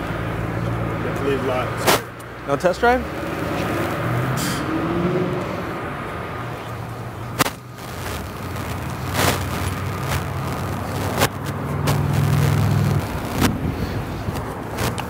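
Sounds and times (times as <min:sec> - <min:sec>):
car engine idling: 0:05.6 - 0:15.0.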